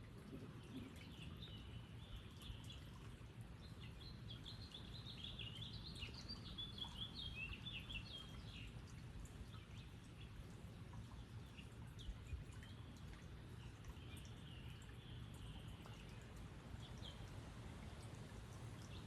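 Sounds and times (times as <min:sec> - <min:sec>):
faint low outdoor rumble: 0:00.0 - 0:19.0.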